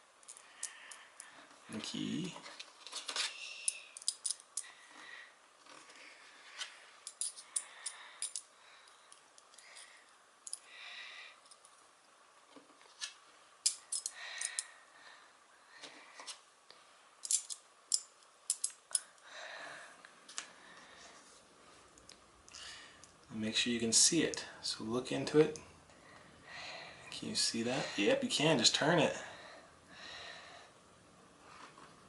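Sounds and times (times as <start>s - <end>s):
small metal parts clicking: 0.2s - 1.3s, 2.8s - 4.7s, 7.0s - 8.5s, 13.6s - 14.7s, 17.2s - 19.2s.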